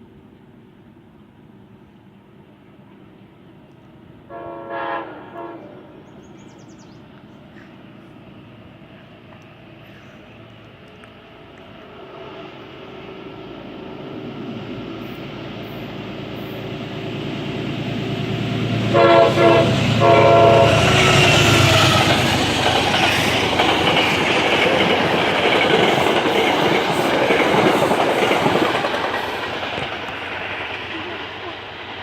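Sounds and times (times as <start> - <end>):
locomotive rumble: 0.2 - 32.0
train horn blasts: 4.3 - 6.0, 18.8 - 22.4
train wheel clatter: 20.2 - 32.0.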